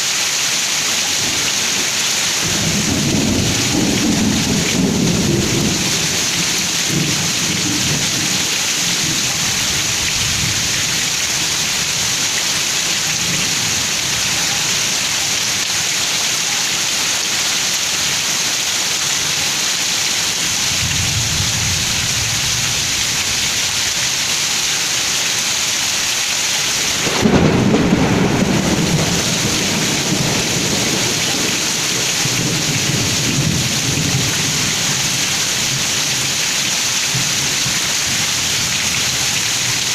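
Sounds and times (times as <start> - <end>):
heavy rain pouring: 0.0 - 39.9
loud thunderclap: 2.4 - 8.5, 26.9 - 34.6
thunder rumbling: 2.4 - 11.8, 20.8 - 23.8, 26.9 - 35.8.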